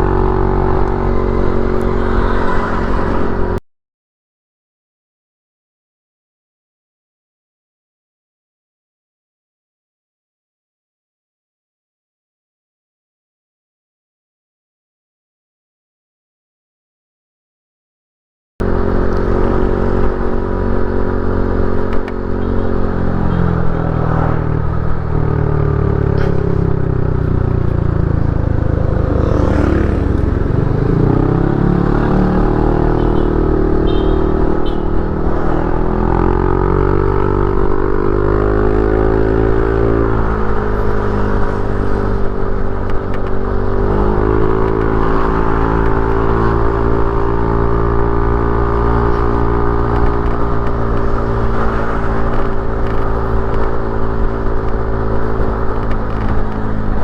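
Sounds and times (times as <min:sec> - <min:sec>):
motorcycle engine running: 0:18.6 - 0:57.0.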